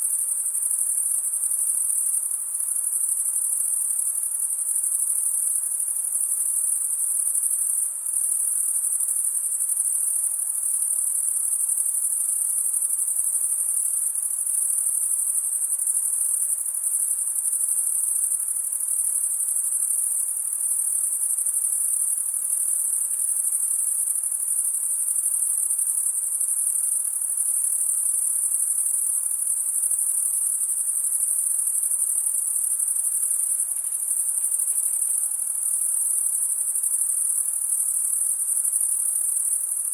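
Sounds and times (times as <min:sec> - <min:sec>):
crickets trilling: 0:10.5 - 0:39.9.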